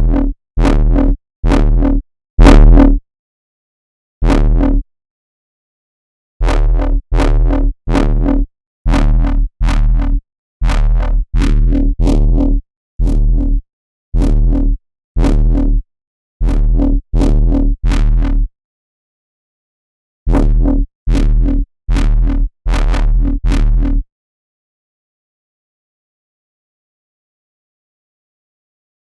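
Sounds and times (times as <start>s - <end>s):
synthesizer bass stabs: 0.0s - 3.0s, 6.4s - 10.1s, 20.4s - 24.0s.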